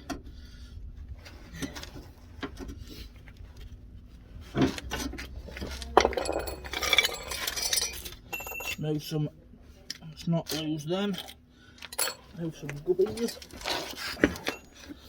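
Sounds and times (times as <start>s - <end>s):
metal parts clinking: 5.6s - 8.9s, 10.5s - 14.9s.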